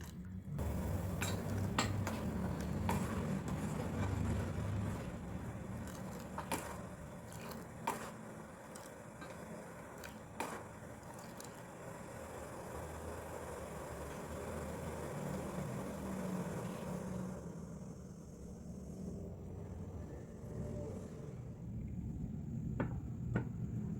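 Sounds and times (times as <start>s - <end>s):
kitchen utensils clinking: 0.0s - 4.3s.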